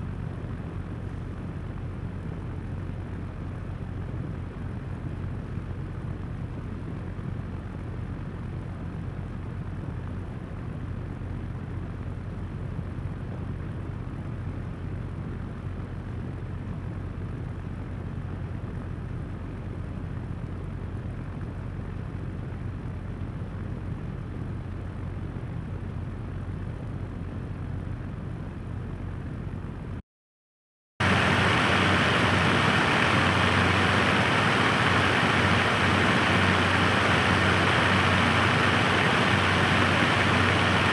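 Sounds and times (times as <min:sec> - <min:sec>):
floor fan running: 0:31.0 - 0:40.9.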